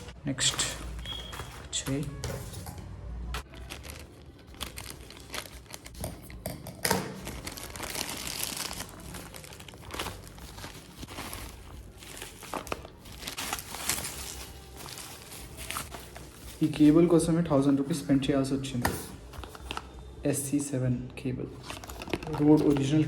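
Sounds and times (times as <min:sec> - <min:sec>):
packaging torn open and crinkled: 0:03.4 - 0:06.2, 0:07.0 - 0:16.1.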